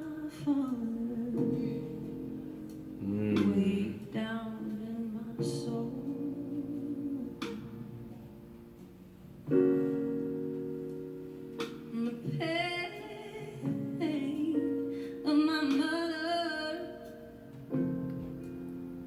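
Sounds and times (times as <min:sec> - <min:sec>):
woman singing a ballad: 0:00.0 - 0:02.2, 0:03.4 - 0:07.9, 0:11.9 - 0:17.5
piano accompaniment: 0:00.0 - 0:19.0.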